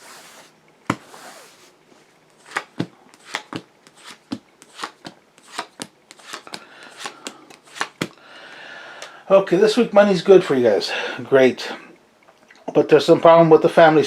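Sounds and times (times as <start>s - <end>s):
cards sliding hiss: 0.0s - 8.2s
card snaps and taps: 2.5s - 8.2s.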